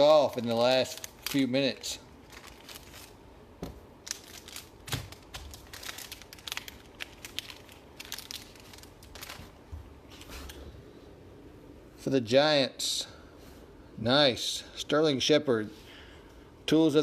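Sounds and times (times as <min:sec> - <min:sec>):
wrappers crinkling: 0:00.0 - 0:03.2, 0:04.0 - 0:10.6.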